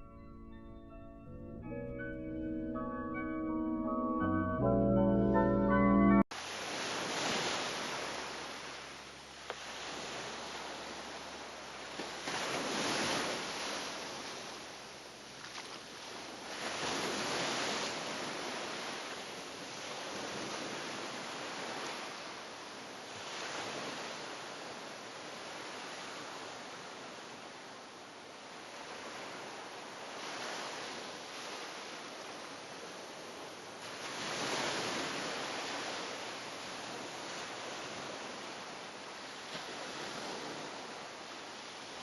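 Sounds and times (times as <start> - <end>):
waves washing onto shore: 6.3 - 42.0.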